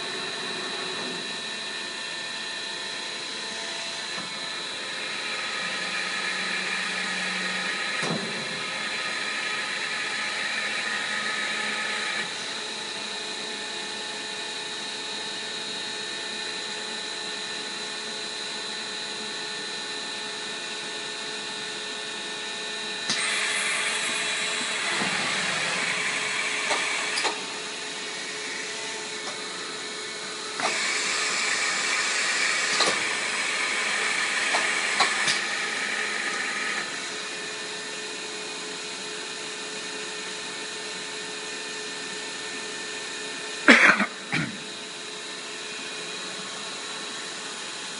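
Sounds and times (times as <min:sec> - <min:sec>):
machine motors humming: 0:00.0 - 0:01.6, 0:23.0 - 0:37.6
loud machine whirring: 0:00.0 - 0:47.9.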